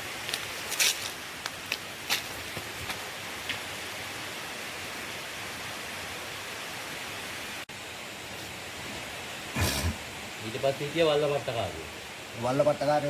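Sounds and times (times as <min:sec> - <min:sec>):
rainforest ambience hiss: 0:00.0 - 0:13.0.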